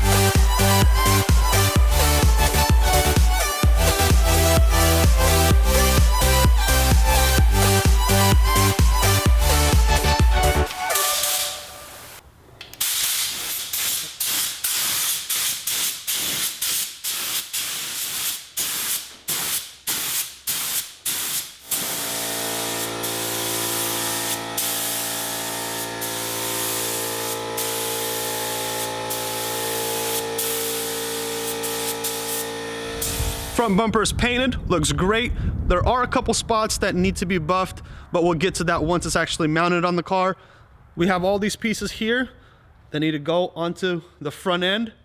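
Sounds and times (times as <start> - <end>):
spray gun hissing: 0.0 - 12.2, 12.8 - 33.8
steady hum: 21.7 - 33.8.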